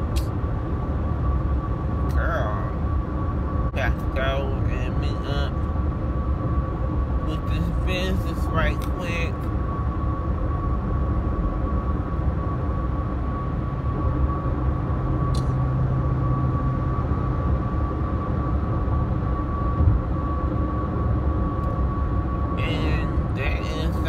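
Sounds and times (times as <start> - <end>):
low background rumble: 0.0 - 24.0
brief click: 15.3 - 15.6.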